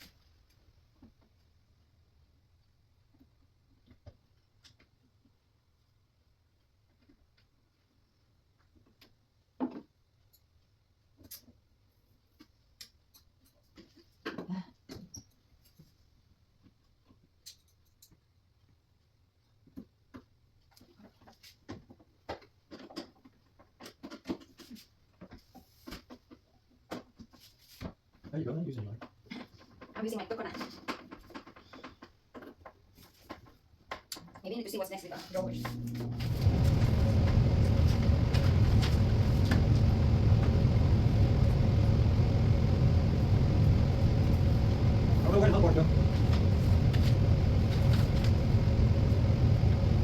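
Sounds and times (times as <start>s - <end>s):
steady low rumble: 35.5s - 50.0s.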